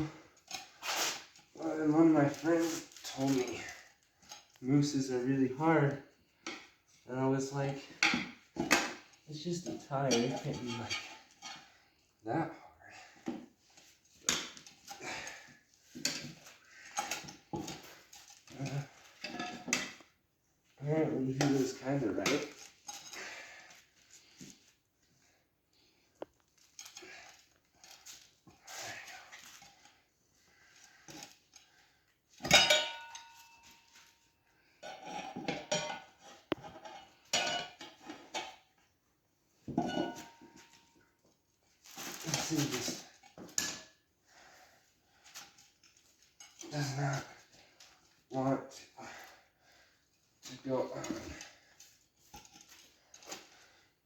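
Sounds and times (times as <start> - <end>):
tire irons clinking on rim: 32.4 - 34.0.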